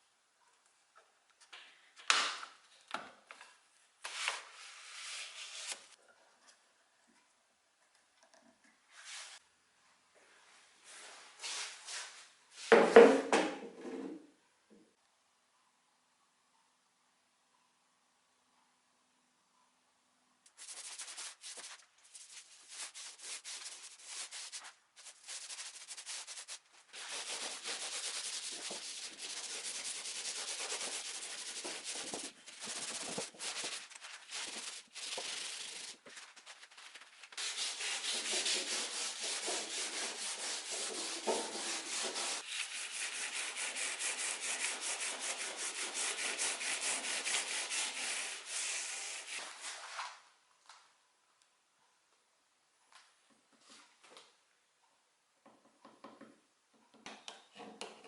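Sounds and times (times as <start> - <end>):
sandpaper rubbing wood: 20.6 - 49.6.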